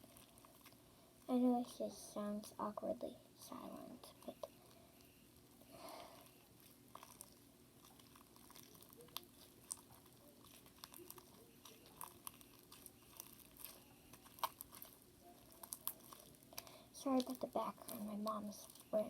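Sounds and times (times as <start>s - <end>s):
quiet room hum: 0.0s - 19.0s
sticky slime clicks and squishes: 6.2s - 18.9s.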